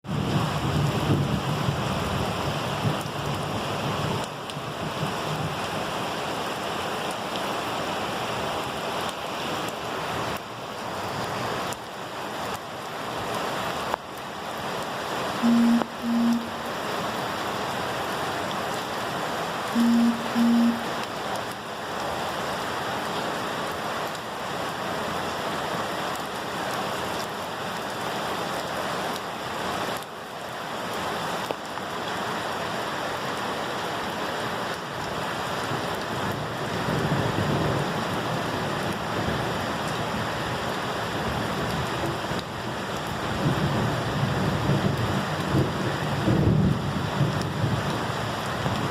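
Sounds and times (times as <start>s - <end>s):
heavy rainfall: 0.0s - 48.9s
low rumbles of thunder: 43.3s - 47.9s.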